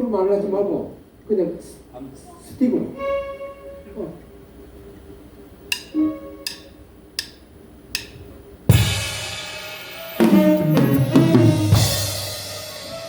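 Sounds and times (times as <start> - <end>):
band playing: 3.0 - 4.1, 5.7 - 6.9, 8.7 - 13.0
drumsticks clicking together: 5.7 - 8.3.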